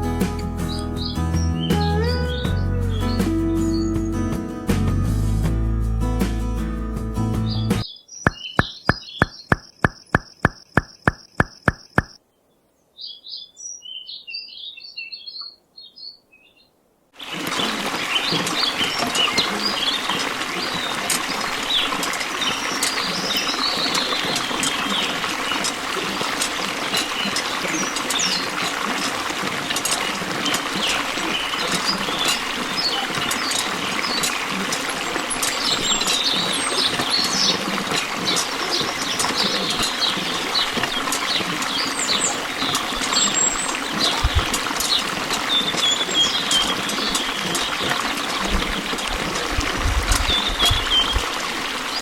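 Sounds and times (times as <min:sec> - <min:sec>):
birds chirping: 0:00.0 - 0:04.4, 0:07.4 - 0:52.0
flowing water rushing: 0:17.2 - 0:52.0.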